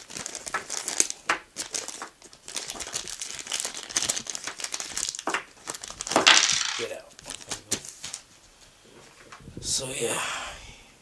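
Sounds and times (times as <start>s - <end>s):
plastic packaging crinkling: 0.0s - 8.3s.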